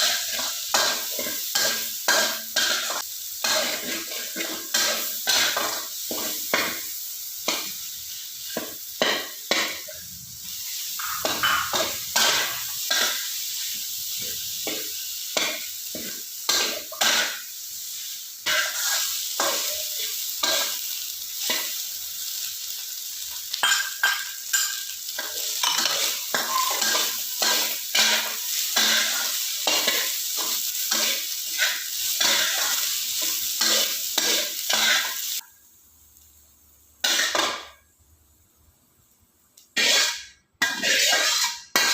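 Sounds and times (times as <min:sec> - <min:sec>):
food sizzling: 0:00.0 - 0:41.9
spatula scraping a pan: 0:18.4 - 0:20.8, 0:23.6 - 0:32.8, 0:39.8 - 0:41.9.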